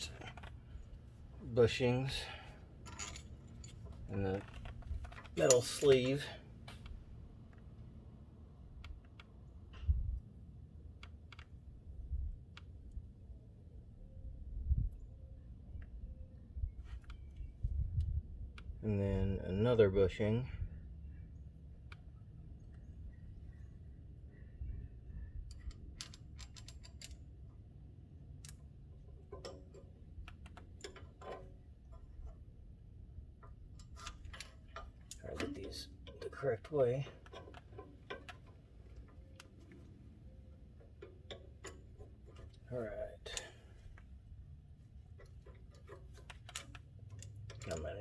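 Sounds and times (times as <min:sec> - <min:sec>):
light clicks and taps of parts: 0:02.8 - 0:07.9, 0:08.8 - 0:10.3, 0:11.0 - 0:11.6, 0:25.4 - 0:27.3, 0:28.4 - 0:32.4, 0:33.4 - 0:44.2, 0:45.1 - 0:48.0
small parts clicking and tapping: 0:25.4 - 0:27.3, 0:45.1 - 0:48.0.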